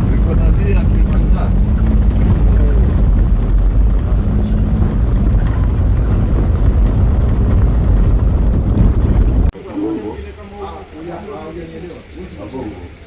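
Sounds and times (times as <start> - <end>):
car engine and road noise: 0.0 - 9.6.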